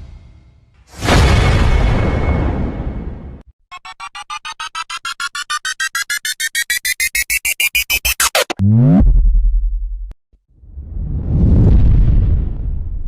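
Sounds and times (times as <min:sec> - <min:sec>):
rising electronic beeps: 0:03.7 - 0:10.0.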